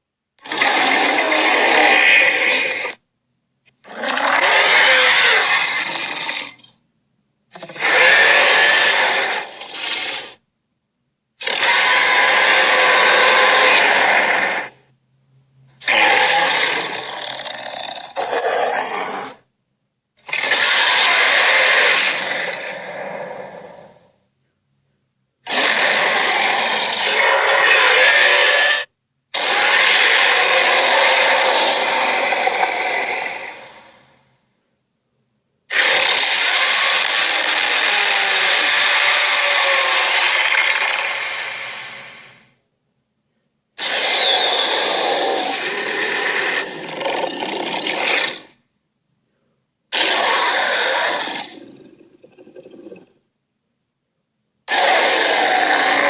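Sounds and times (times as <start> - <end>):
monster roaring: 0.4 - 3.0, 3.9 - 6.6, 7.6 - 10.4, 11.4 - 14.8, 15.8 - 19.4, 20.3 - 24.0, 25.5 - 34.0, 35.7 - 42.4, 43.8 - 48.6, 49.9 - 53.0, 54.7 - 56.0.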